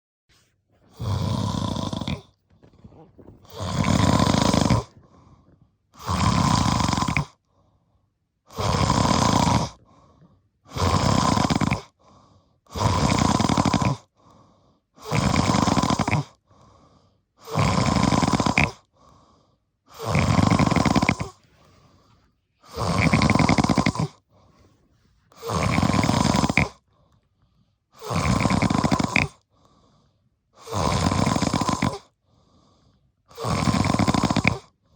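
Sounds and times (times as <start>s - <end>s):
person snoring deeply: 0.8s - 7.4s, 8.5s - 10.1s, 10.7s - 12.0s, 12.7s - 14.1s, 15.0s - 16.4s, 17.4s - 18.9s, 19.9s - 24.2s, 25.3s - 26.8s, 28.0s - 29.4s, 30.6s - 32.1s, 33.3s - 34.8s.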